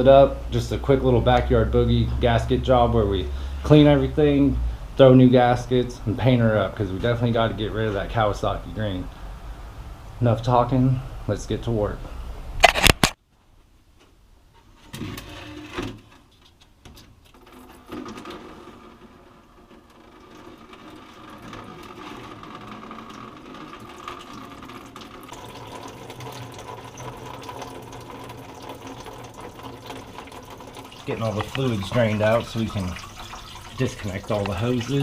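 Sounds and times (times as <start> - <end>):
fluid stream into drain pan: 17.3 - 35.0.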